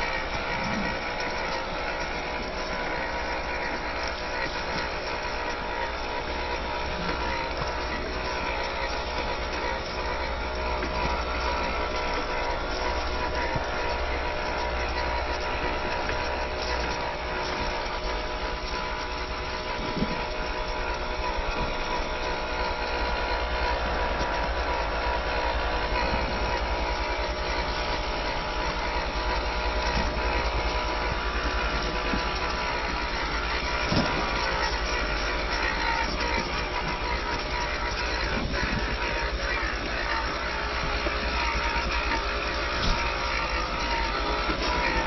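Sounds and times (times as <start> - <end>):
small electric motor whining: 0.0 - 45.0.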